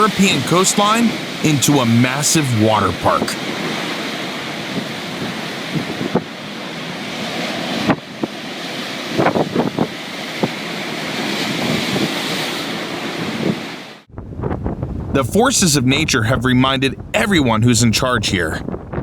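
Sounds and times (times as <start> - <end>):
heavy surf crashing: 0.0 - 7.9
storm wind: 13.0 - 19.0.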